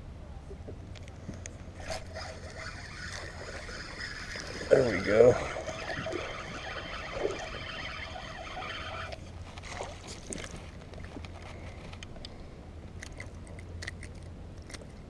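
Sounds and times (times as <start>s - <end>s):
low hum: 0.0s - 15.0s
boat motor whine: 1.8s - 9.4s.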